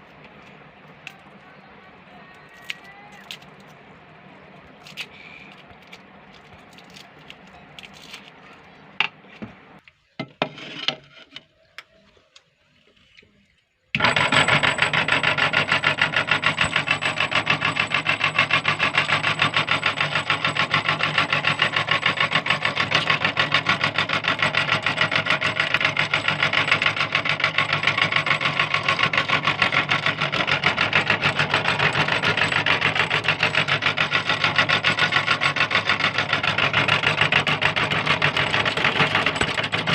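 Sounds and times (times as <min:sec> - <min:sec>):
electric meat grinder grinding candy: 0:14.0 - 0:39.9.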